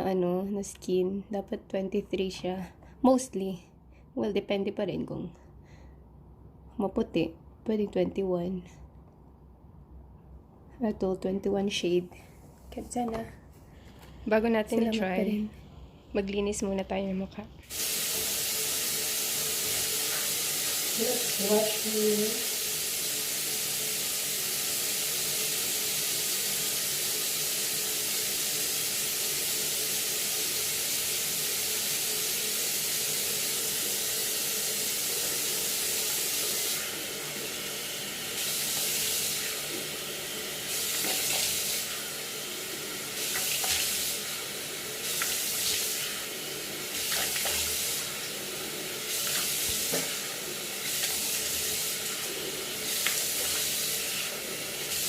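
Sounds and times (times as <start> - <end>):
tap water running into sink: 17.6 - 55.0.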